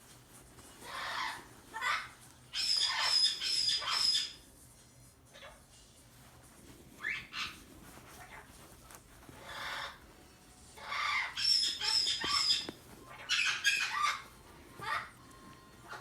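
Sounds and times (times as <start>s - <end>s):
parrot shrill calls: 0.8s - 4.4s, 7.0s - 7.6s, 9.4s - 10.0s, 10.8s - 15.2s
parrot whistled notes: 2.5s - 4.4s, 10.8s - 12.6s, 13.2s - 14.2s.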